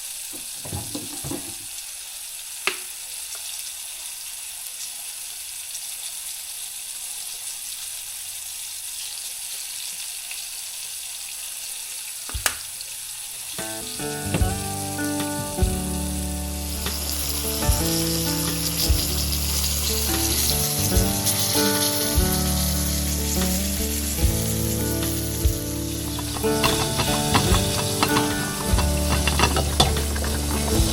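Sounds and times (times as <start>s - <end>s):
food sizzling in a pan: 0.0s - 30.9s
music with a steady beat: 13.6s - 30.9s.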